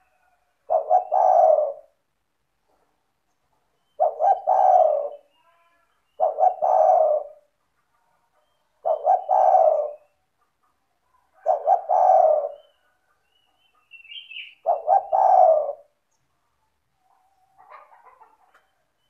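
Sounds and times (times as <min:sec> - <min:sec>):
dove cooing: 0:00.0 - 0:02.0, 0:03.9 - 0:07.6, 0:08.5 - 0:10.2, 0:11.2 - 0:13.1, 0:13.8 - 0:16.0
small bird chirp: 0:11.1 - 0:16.3.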